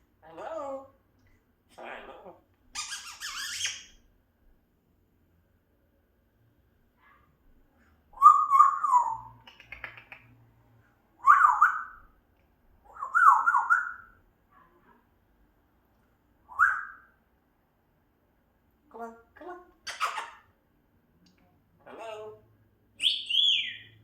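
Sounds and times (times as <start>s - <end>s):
parrot whistled calls: 2.8s - 3.9s, 8.2s - 9.3s, 11.2s - 12.1s, 12.9s - 14.2s, 16.5s - 17.2s, 23.0s - 24.0s.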